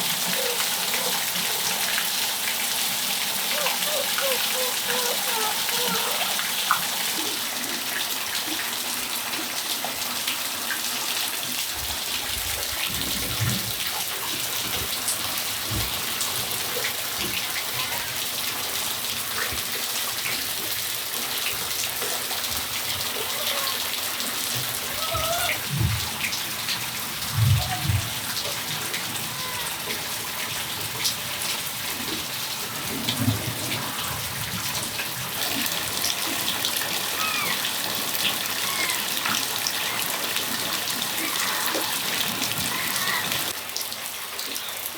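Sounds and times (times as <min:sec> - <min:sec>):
rain falling on patio: 0:00.0 - 0:44.9.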